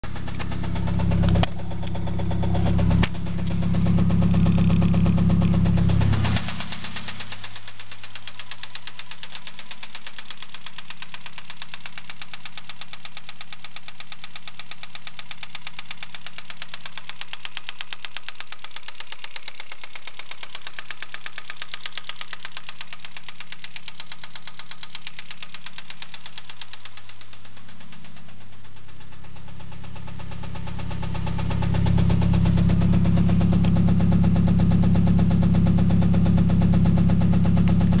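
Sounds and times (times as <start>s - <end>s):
deep engine note: 0.0s - 8.0s, 27.5s - 38.0s
engine knocking: 0.0s - 38.0s.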